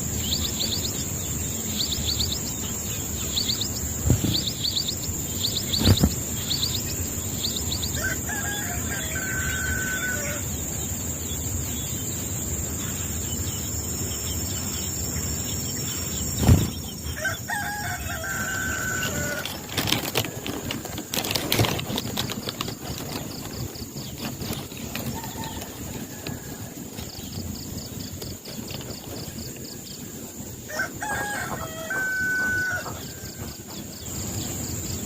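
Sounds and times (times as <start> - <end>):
rooster crowing: 7.9 - 10.6, 17.2 - 19.8, 25.1 - 26.8, 30.7 - 33.5
loud thump: 16.4 - 16.9.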